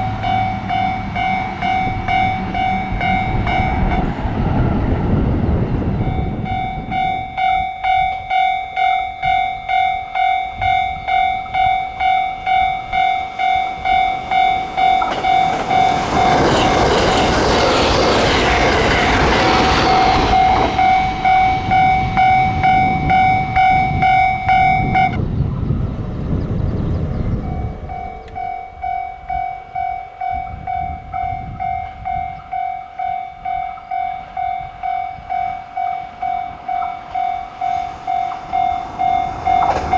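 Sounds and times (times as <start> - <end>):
level crossing warning bell: 0.0 - 25.3, 27.3 - 39.9
train rushing past: 0.0 - 39.9.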